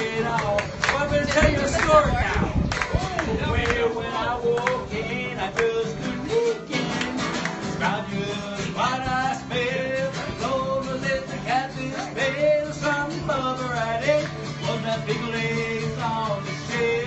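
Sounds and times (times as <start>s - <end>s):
person singing: 0.0s - 7.2s
strummed acoustic guitar: 0.0s - 17.0s.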